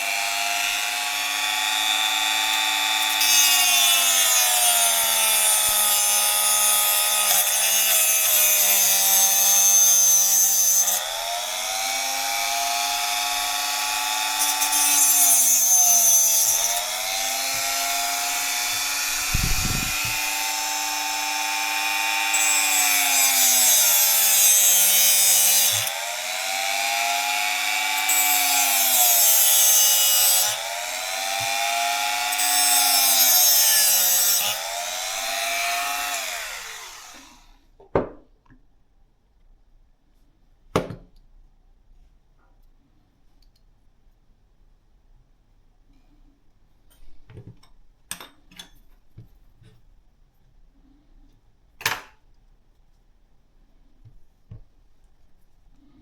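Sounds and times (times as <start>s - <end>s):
gritty cutting or grinding: 0.0s - 37.5s
small power tool motor running: 12.7s - 37.5s.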